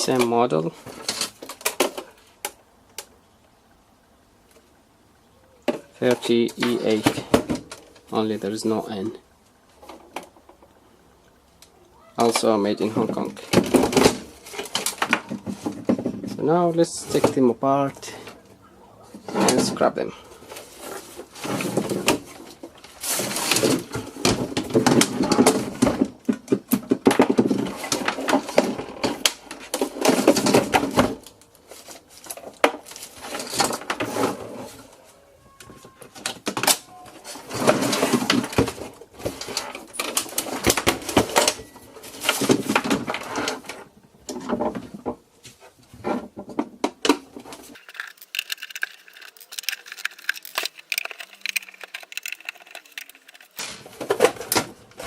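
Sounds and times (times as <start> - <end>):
plastic parts clicking and rattling: 12.2 - 16.3, 47.0 - 55.0.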